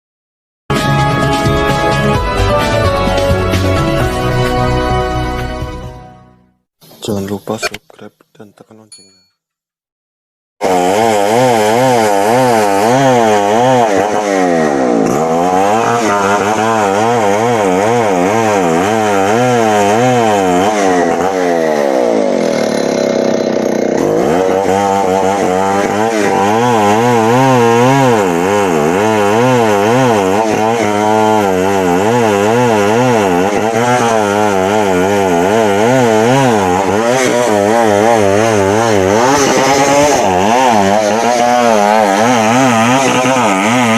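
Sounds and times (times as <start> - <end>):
chainsaw engine revving: 10.6 - 43.9.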